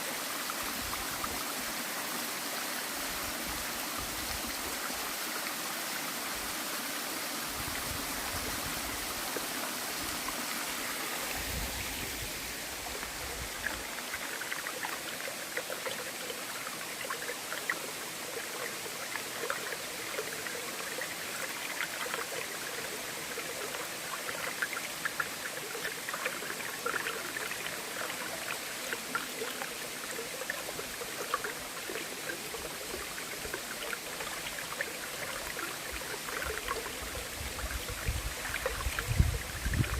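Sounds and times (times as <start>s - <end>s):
small close splashes and drips: 12.8s - 39.9s.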